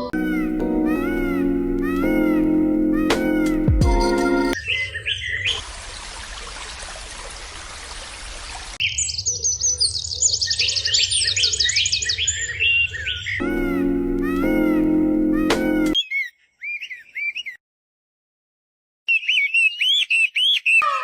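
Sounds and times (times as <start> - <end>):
music: 0.0 - 4.6, 13.4 - 16.0
small birds chirping: 3.3 - 14.7, 15.8 - 17.6, 19.1 - 21.0.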